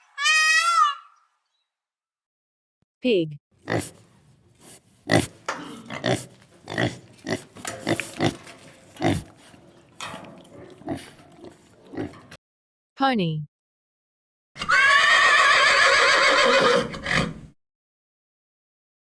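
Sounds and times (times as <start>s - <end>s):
pig grunting: 3.6s - 12.4s.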